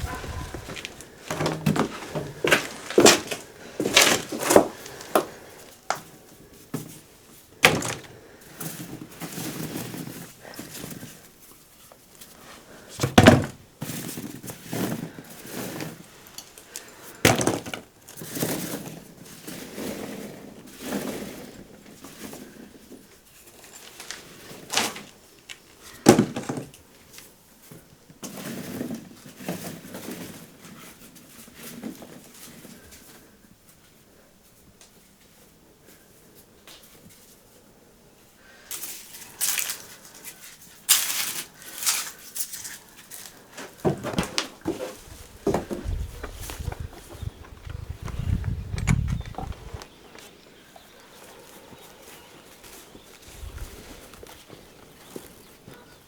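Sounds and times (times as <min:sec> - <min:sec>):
objects knocking and clunking: 0:00.0 - 0:06.1, 0:07.6 - 0:08.1, 0:43.6 - 0:50.2
rustling and scraping: 0:00.0 - 0:56.0.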